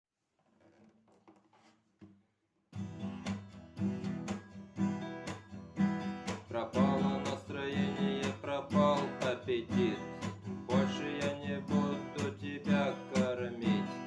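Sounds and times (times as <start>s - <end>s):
acoustic guitar strumming: 2.8s - 14.0s
person singing: 6.5s - 14.0s.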